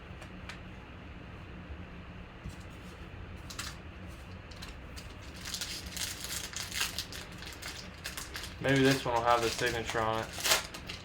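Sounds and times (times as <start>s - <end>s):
steady low hum: 0.0s - 11.0s
cards clicking and rustling: 4.5s - 11.0s.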